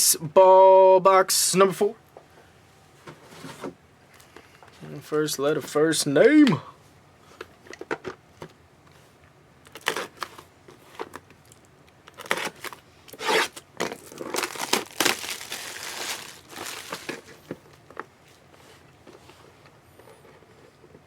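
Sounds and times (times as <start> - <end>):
packaging crinkled and torn: 9.6 - 10.4, 11.0 - 17.3.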